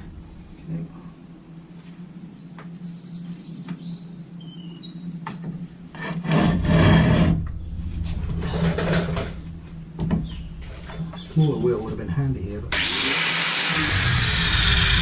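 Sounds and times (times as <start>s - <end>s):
low steady hum: 0.0s - 15.0s
loud rasping scrape: 6.0s - 7.4s, 12.7s - 15.0s.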